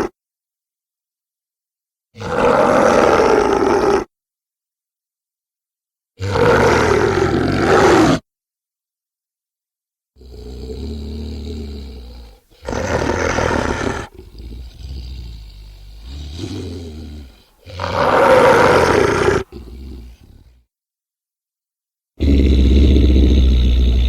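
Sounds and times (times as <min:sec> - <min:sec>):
creature roars: 0:02.2 - 0:04.1, 0:06.2 - 0:08.2, 0:10.2 - 0:20.6, 0:22.2 - 0:24.0
creature growling: 0:06.2 - 0:08.2, 0:10.2 - 0:20.6, 0:22.2 - 0:24.0.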